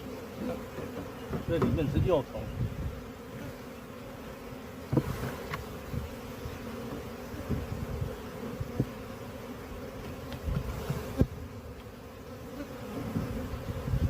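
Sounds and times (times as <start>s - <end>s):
honeybees buzzing: 0.0s - 14.0s
light knocks of hive frames: 0.3s - 2.3s, 4.8s - 9.2s, 9.8s - 12.0s, 12.8s - 13.9s.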